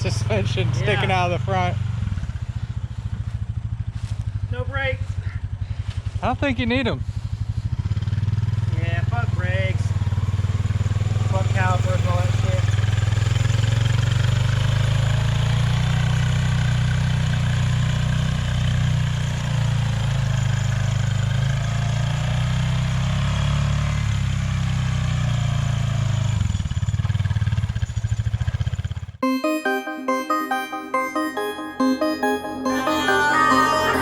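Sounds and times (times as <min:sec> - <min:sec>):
vehicle engine running: 0:00.0 - 0:22.4
keyboard music: 0:29.2 - 0:34.0.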